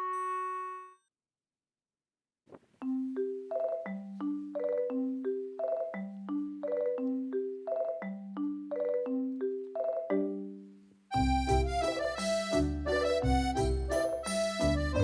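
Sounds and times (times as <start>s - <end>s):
mallet-struck tune: 11.2s - 15.0s.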